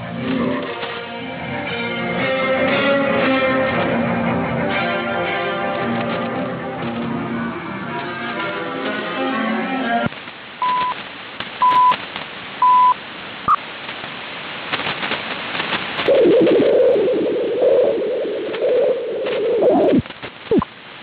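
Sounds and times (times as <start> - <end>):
radio static and crackle: 0.0 - 1.4, 10.0 - 21.0
radio time signal beeps: 10.6 - 11.0, 11.6 - 12.0, 12.6 - 13.6, 19.6 - 20.7.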